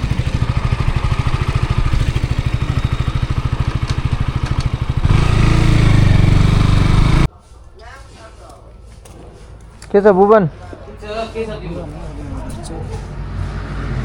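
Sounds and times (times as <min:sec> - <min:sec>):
motorcycle engine running: 0:00.0 - 0:07.3.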